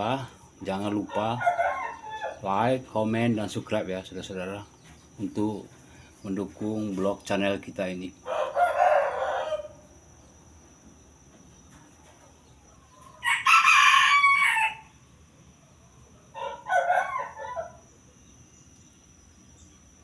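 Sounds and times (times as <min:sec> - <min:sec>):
rooster crowing: 0:01.0 - 0:02.6, 0:08.2 - 0:10.0, 0:12.6 - 0:15.0, 0:16.0 - 0:18.1.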